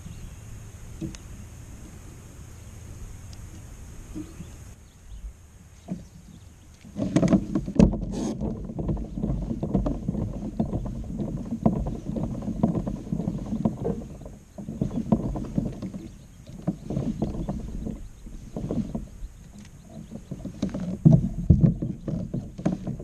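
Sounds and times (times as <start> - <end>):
water slapping against hull: 6.8 - 23.0.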